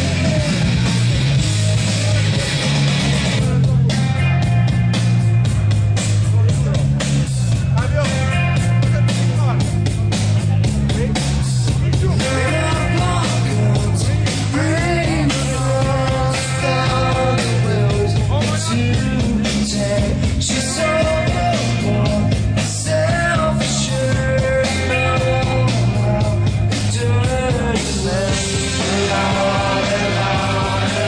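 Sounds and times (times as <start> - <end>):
loud rock music: 0.0 - 31.0
person singing: 12.0 - 31.0.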